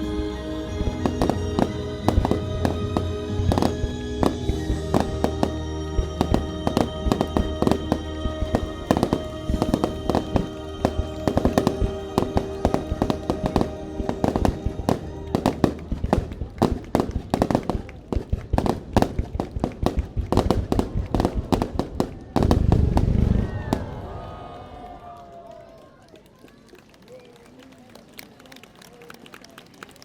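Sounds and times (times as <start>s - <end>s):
music: 0.0s - 17.5s
fireworks bursting and crackling: 0.0s - 25.7s.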